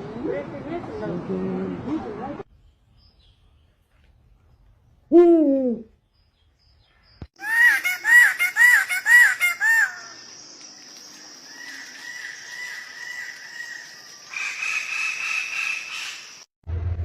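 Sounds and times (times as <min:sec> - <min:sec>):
steady higher-pitched bird call: 0:07.4 - 0:10.2.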